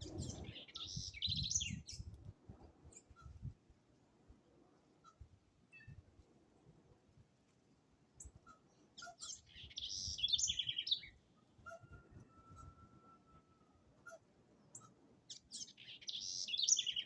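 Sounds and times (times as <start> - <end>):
birds chirping: 0.0 - 2.1, 8.8 - 12.6, 14.7 - 17.0
bird long whistled note: 11.7 - 13.7.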